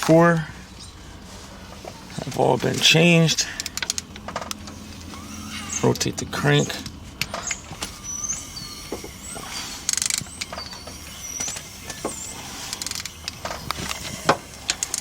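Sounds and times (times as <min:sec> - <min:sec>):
ratchet wrench clicking: 0:02.8 - 0:15.0
metallic knocks: 0:06.8 - 0:15.0.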